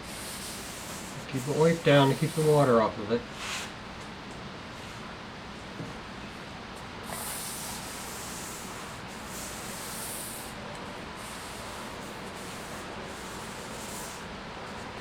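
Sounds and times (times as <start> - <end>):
background hiss: 0.0 - 3.8
hand rubbing wet wood: 0.1 - 2.7.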